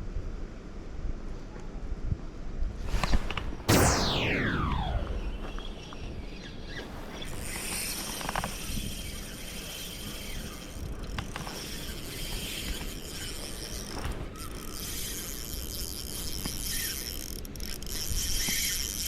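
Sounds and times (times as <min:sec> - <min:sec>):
fishing reel whirring: 0:07.2 - 0:19.0.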